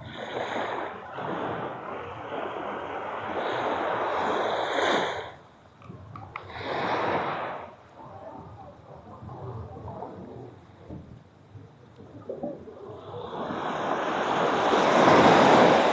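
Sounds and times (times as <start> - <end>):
waves washing on sandy beach: 0.0 - 15.9.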